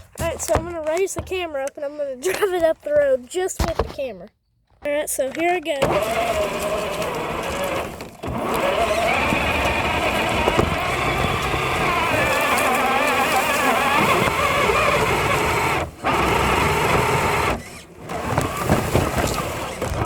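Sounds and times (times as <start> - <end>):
rc truck motor whining: 5.8 - 20.0.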